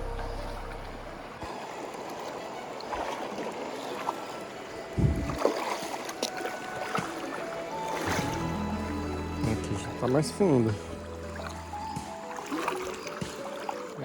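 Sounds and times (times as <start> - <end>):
flowing stream: 0.0 - 14.0
footsteps wading through water: 0.0 - 14.0.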